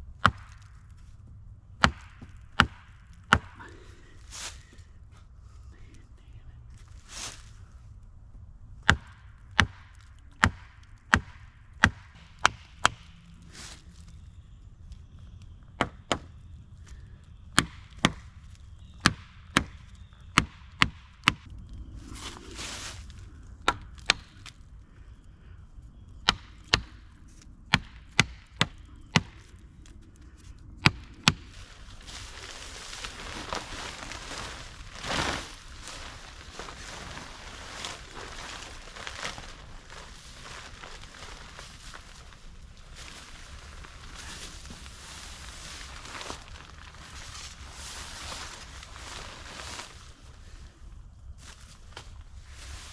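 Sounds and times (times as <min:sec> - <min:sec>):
wood chopping blows: 0:01.8 - 0:03.8
rustling hiss: 0:03.5 - 0:08.0, 0:21.5 - 0:23.6, 0:31.2 - 0:52.9.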